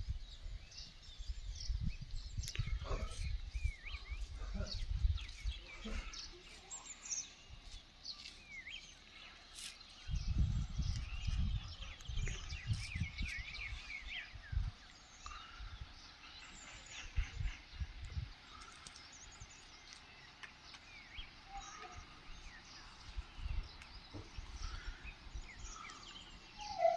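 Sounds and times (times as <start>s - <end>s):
small birds chirping: 0.0s - 26.9s
low rumbling thumps: 22.0s - 26.3s.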